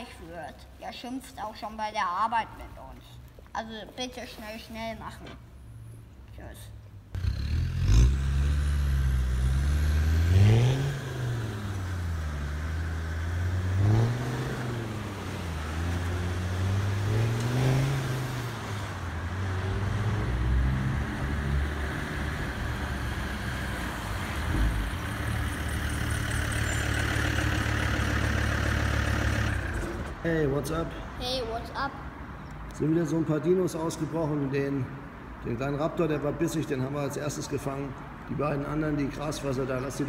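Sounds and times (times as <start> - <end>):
vehicle engine running and revving: 7.2 - 30.1.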